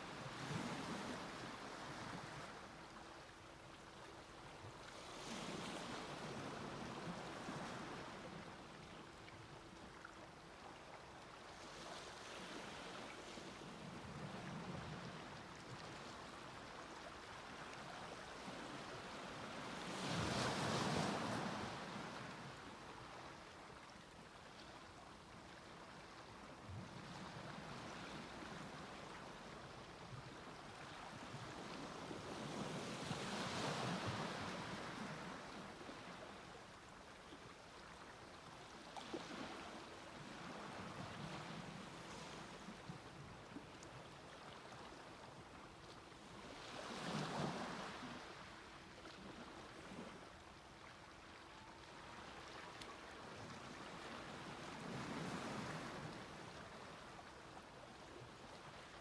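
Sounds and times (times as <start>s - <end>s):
waves breaking on beach: 18.4s - 22.4s.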